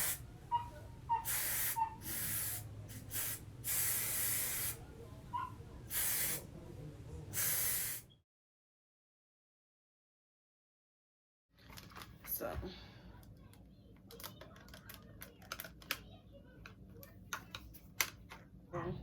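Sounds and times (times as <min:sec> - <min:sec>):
aerosol spray can hissing: 0:00.0 - 0:00.2, 0:01.2 - 0:04.8, 0:05.9 - 0:06.5, 0:07.4 - 0:08.0.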